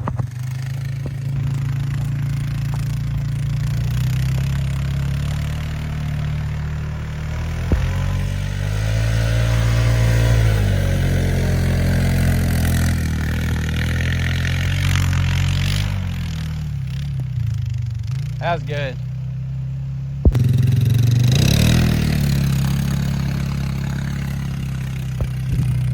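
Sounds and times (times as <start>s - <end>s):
vehicle engine revving: 0.0s - 25.9s
sharp knock: 7.7s - 8.4s.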